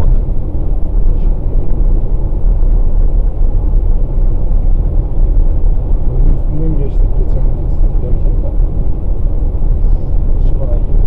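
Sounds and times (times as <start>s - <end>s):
road and tyre noise in car cabin: 0.0s - 11.0s.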